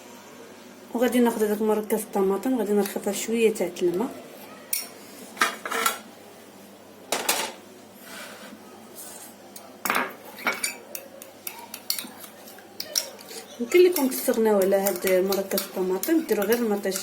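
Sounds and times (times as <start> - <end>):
spoon scraping against a bowl: 10.4 - 17.0.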